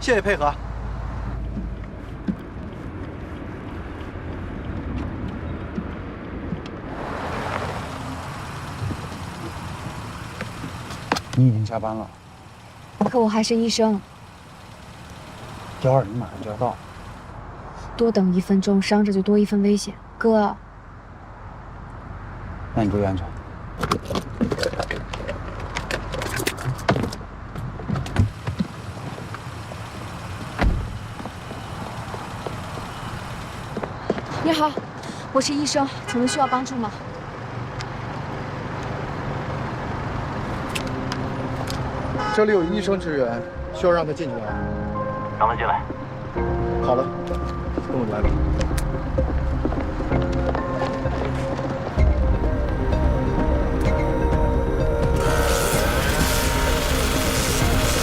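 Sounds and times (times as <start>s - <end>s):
vehicle and road rumble: 0.0s - 58.0s
car door shutting thud: 30.6s - 31.1s
bright hiss: 55.2s - 58.0s.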